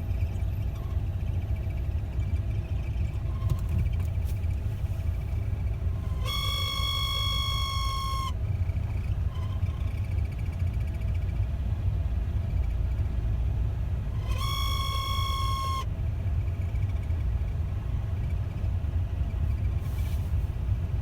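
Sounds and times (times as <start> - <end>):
car rumbling on the move: 0.0 - 21.0
high pure whistle: 6.0 - 8.4, 14.2 - 15.9.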